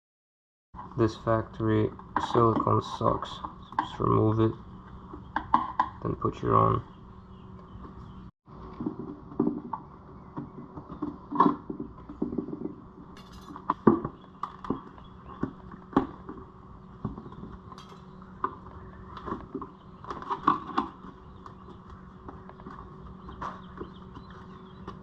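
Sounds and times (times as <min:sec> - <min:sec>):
steady low hum: 0:00.8 - 0:25.0.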